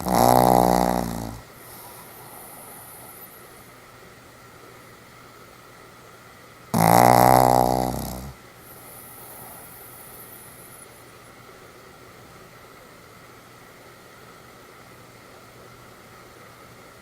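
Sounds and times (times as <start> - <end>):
dog snoring: 0.0 - 3.6, 6.7 - 10.8.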